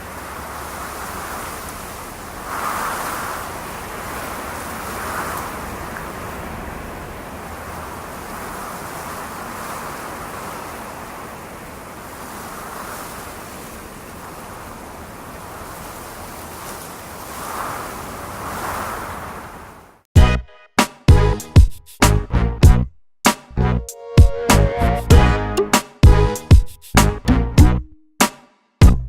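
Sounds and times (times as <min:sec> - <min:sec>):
ocean waves rushing: 0:00.0 - 0:20.1.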